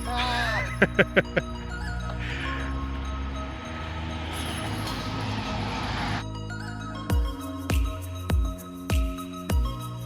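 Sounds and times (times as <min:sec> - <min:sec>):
held chords: 0:00.0 - 0:06.2.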